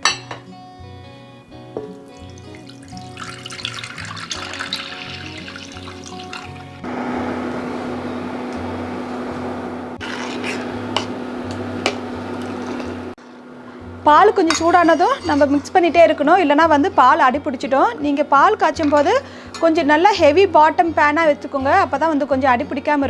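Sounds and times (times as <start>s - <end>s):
milk pouring into saucepan: 1.8s - 6.8s.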